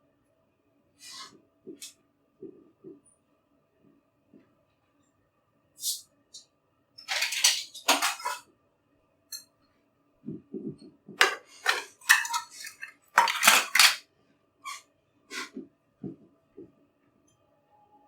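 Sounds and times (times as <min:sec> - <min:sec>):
dishes and utensils clattering: 0:07.0 - 0:08.4, 0:11.2 - 0:14.0.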